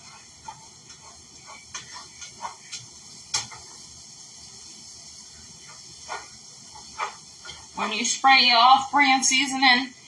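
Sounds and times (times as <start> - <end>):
utensil knocking and scraping pan: 0.0 - 3.8, 5.6 - 7.9
chickpeas sizzling in frying pan: 0.0 - 10.0.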